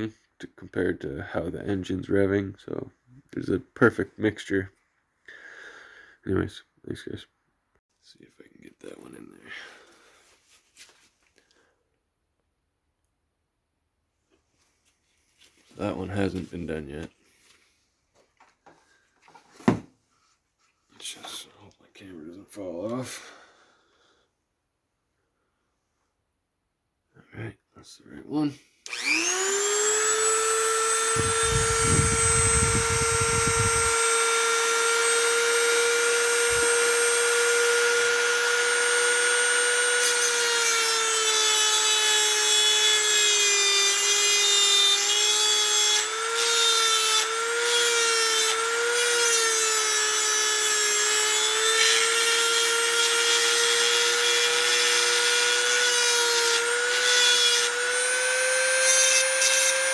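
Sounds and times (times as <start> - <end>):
rotary tool grinding metal: 28.9 - 59.9.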